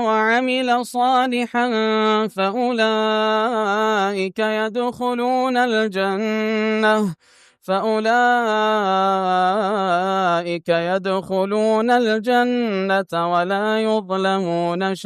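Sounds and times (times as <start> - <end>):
man chanting recitation: 0.0 - 15.0
short breath: 7.2 - 7.7.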